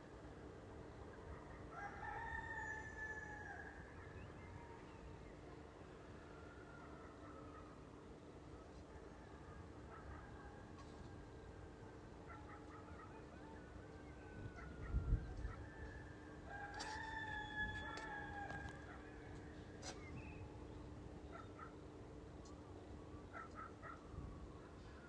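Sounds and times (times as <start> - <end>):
rooster crowing: 1.7 - 3.8, 15.8 - 18.9.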